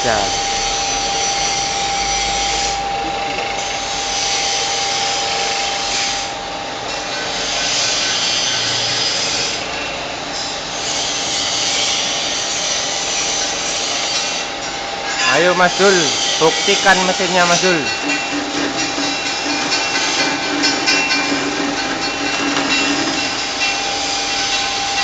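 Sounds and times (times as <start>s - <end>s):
motor whine: 0.0s - 7.5s.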